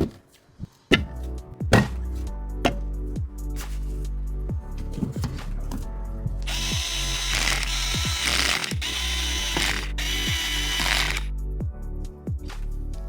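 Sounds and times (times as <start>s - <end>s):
bright buzzing whir: 6.5s - 11.3s.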